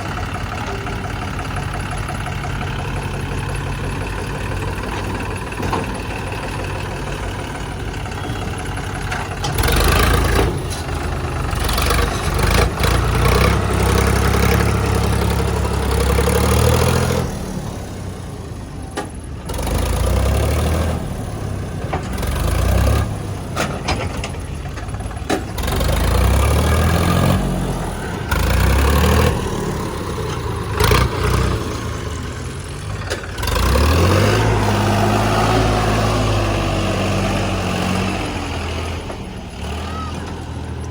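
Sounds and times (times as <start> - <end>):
diesel engine revving: 0.0 - 40.9.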